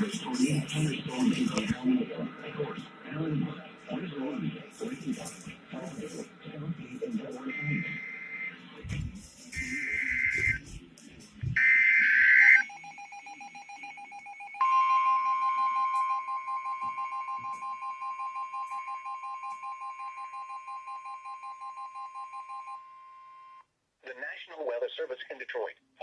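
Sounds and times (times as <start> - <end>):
steady high tone: 4.8 - 10.9
screechy digital data tones: 9.5 - 10.6, 11.6 - 14.8
pulsing electronic alert tone: 9.6 - 10.6.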